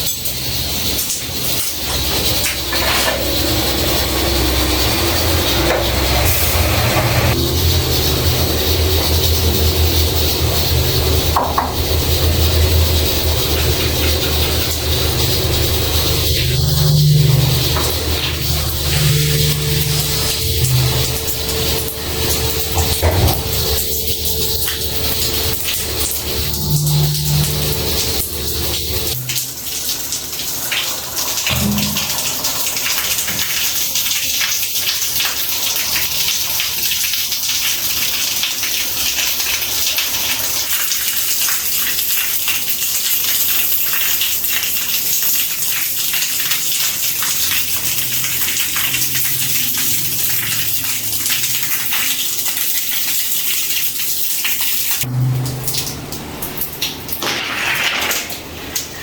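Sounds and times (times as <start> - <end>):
water gushing and spraying: 0.0 - 59.0.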